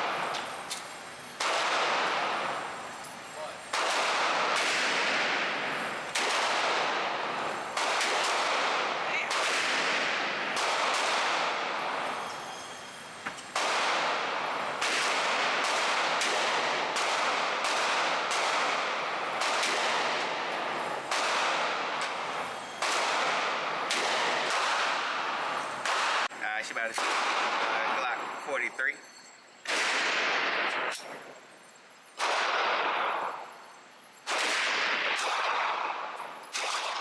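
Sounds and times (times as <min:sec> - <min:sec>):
handgun shots echoing: 0:03.7 - 0:05.5, 0:06.1 - 0:11.5, 0:14.8 - 0:20.3, 0:34.3 - 0:37.0.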